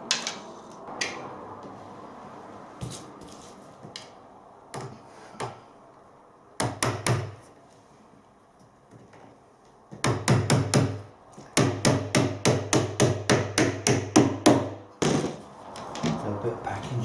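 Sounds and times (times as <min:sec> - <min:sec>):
wood and tools knocking: 0:08.9 - 0:16.2.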